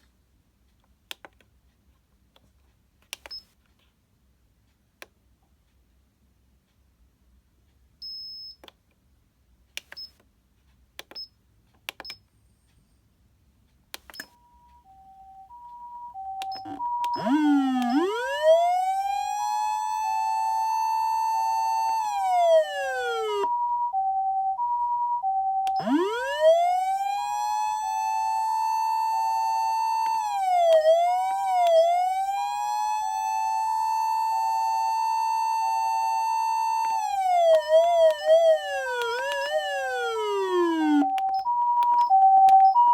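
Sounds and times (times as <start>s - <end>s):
clicks: 2.3s - 3.6s, 16.4s - 23.5s, 25.6s - 42.9s
two-tone hi-lo siren: 14.8s - 42.9s
electronic wail siren: 16.1s - 42.9s.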